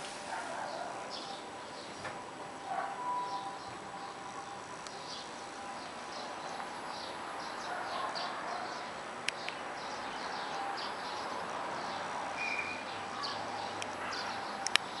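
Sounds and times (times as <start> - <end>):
steady background hiss: 0.0 - 15.0
small birds chirping: 3.2 - 15.0
sharp clicks: 14.6 - 14.9.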